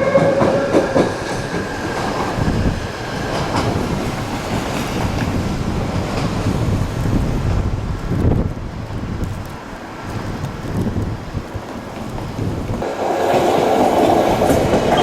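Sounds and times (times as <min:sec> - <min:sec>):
train wheels clacking over joints: 0:00.0 - 0:06.8, 0:11.6 - 0:15.0.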